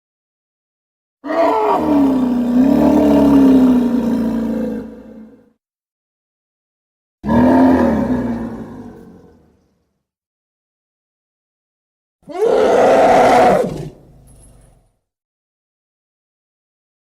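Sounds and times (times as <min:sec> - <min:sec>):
deep creature roar: 0:01.2 - 0:05.6, 0:07.2 - 0:09.6, 0:12.3 - 0:14.0.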